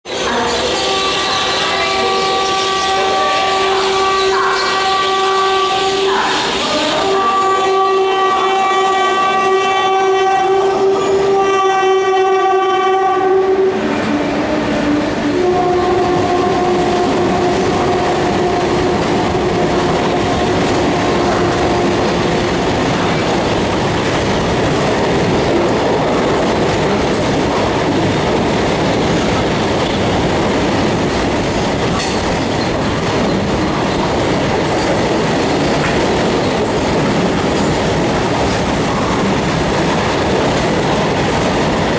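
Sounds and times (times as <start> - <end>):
locomotive horn blasts: 0.4 - 23.4.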